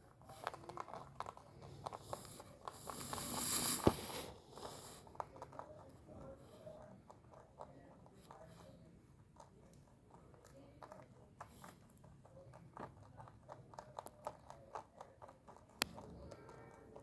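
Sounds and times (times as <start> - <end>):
rabbit chewing and crunching: 0.0 - 17.0
rustling hiss: 2.2 - 5.0.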